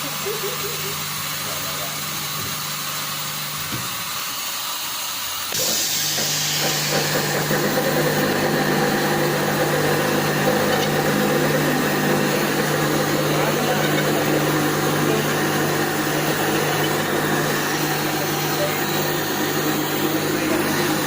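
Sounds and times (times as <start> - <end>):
running machine with hiss: 0.0 - 21.0
steady machine hum: 0.0 - 21.0.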